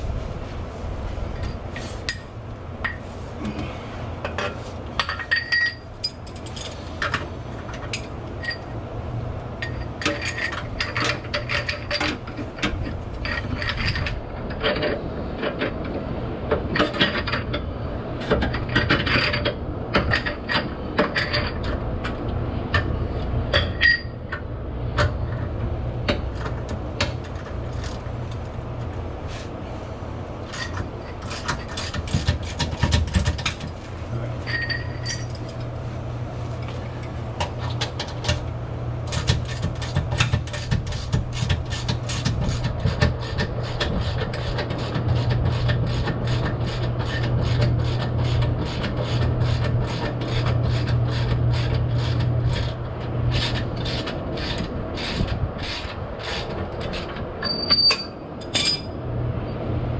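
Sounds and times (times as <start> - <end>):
low steady hum: 0.0 - 59.9
metal tools clicking and clinking: 4.3 - 8.7, 34.4 - 35.6, 57.1 - 59.0.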